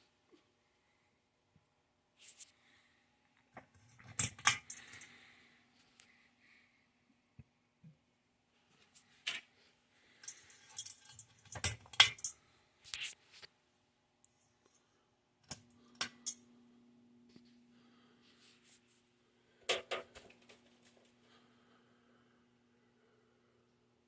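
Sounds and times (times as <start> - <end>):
metal chain jangling: 10.2 - 12.3.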